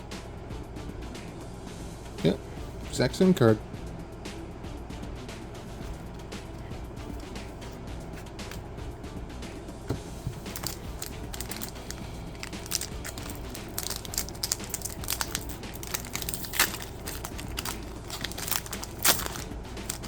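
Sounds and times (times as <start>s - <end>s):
card pack wrapper crinkling: 10.4s - 20.0s.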